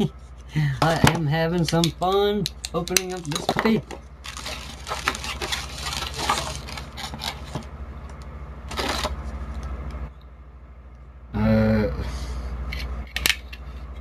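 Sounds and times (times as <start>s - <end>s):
paper wrap tearing and crinkling: 4.2s - 7.7s, 8.7s - 9.2s.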